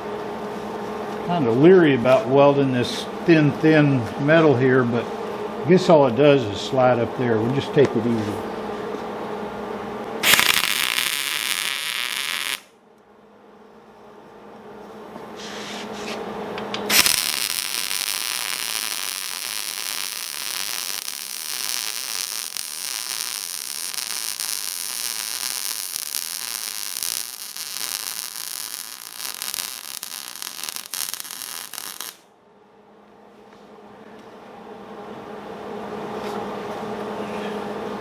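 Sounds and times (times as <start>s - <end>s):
steady low hum: 0.0s - 38.0s
welding arc crackling: 10.2s - 12.7s, 16.6s - 32.2s.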